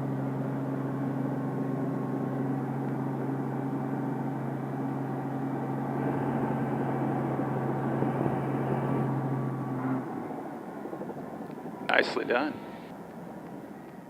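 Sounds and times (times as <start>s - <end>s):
helicopter engine and rotor drone: 0.0s - 14.0s.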